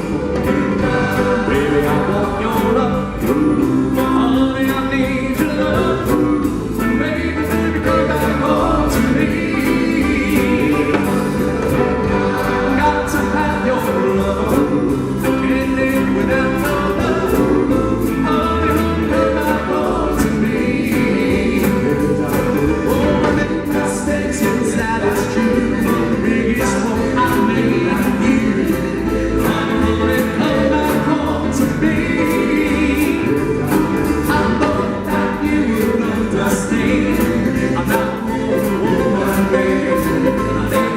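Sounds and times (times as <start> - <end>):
doo-wop group singing in harmony: 0.0 - 40.9
steady drum beat: 0.0 - 40.9.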